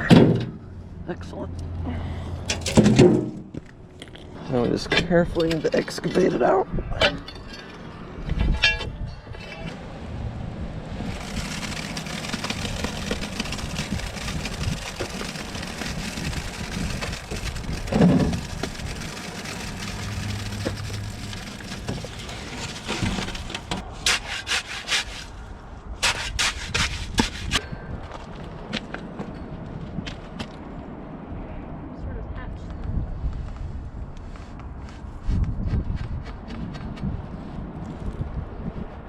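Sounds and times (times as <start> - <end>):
rough scraping of rubble: 2.4 - 10.2, 10.9 - 28.4.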